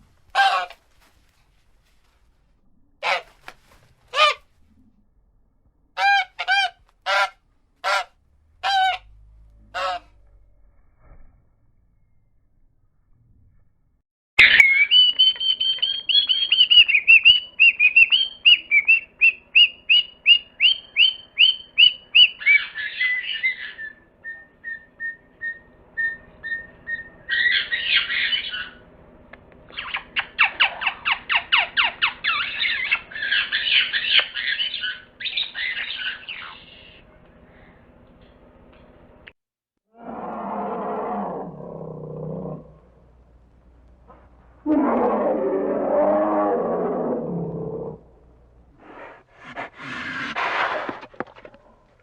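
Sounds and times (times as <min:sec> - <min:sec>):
harsh chattering bird squawks: 0:03.0 - 0:03.5, 0:04.1 - 0:04.4, 0:06.0 - 0:09.0, 0:14.4 - 0:24.0, 0:26.4 - 0:28.8, 0:29.7 - 0:37.0
bird whistling repeated notes: 0:14.4 - 0:28.8.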